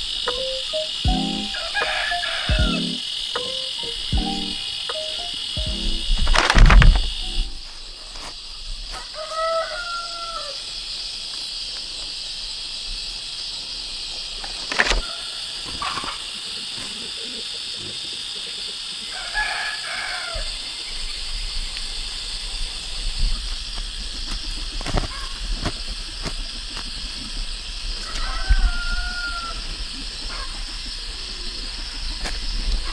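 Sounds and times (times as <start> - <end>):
high insect-like hiss: 0.0 - 32.9
rooster crowing: 1.6 - 2.6, 9.1 - 10.6, 19.1 - 20.5, 28.2 - 29.6.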